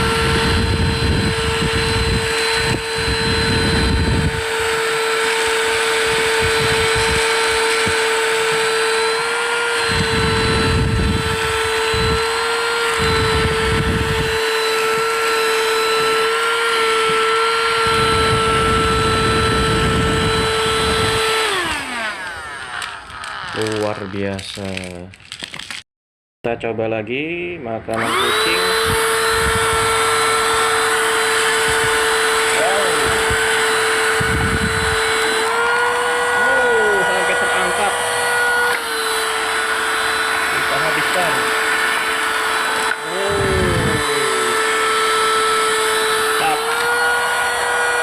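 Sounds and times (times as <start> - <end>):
handheld vacuum motor whine: 0.0 - 25.8, 27.9 - 48.0
vacuum sucking up gravel: 28.0 - 48.0.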